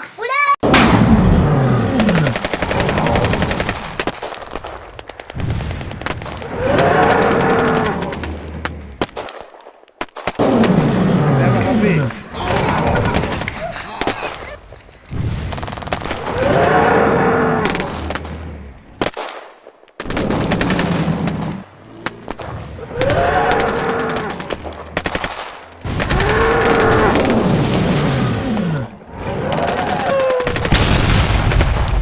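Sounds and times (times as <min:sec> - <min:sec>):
rapid gunfire bursts: 0:02.1 - 0:06.4, 0:20.0 - 0:21.6.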